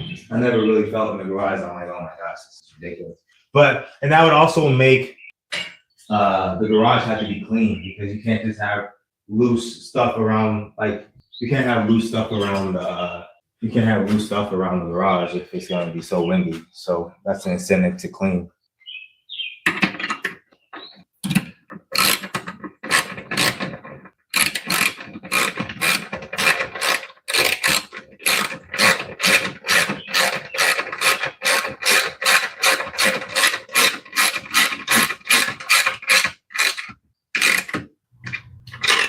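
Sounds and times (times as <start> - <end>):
ratchet wrench ratcheting: 22.0 - 37.8.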